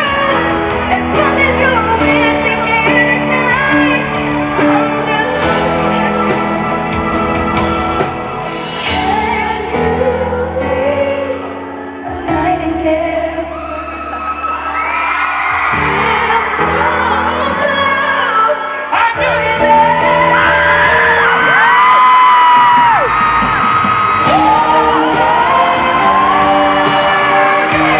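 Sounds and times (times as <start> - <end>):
woman singing pop ballad: 0.0 - 7.8, 8.6 - 23.0, 24.2 - 27.9
band chords: 0.0 - 13.2, 19.2 - 27.9
crowd whooping: 13.4 - 16.7, 19.8 - 27.9.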